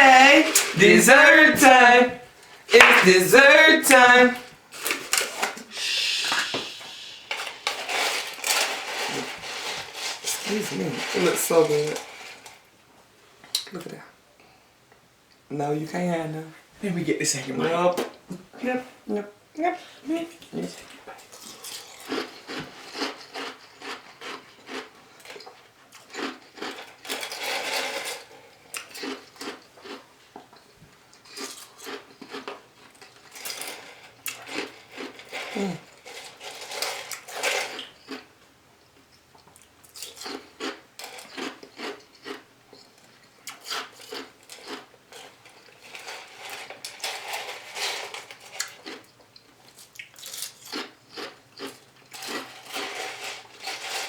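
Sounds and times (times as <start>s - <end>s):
mouth sounds: 0.0s - 4.5s, 5.6s - 7.6s
chewing crunches: 21.2s - 38.3s, 39.3s - 45.9s, 48.3s - 54.0s.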